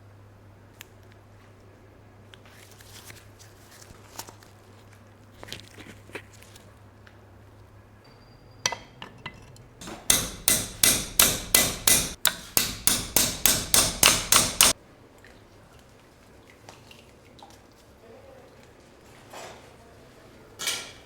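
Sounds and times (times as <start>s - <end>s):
hammer striking metal: 8.1s - 14.8s.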